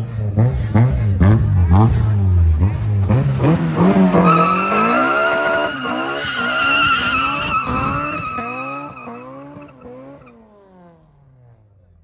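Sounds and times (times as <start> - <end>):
car engine revving: 0.0 - 11.0
car tyres squealing: 3.4 - 10.4.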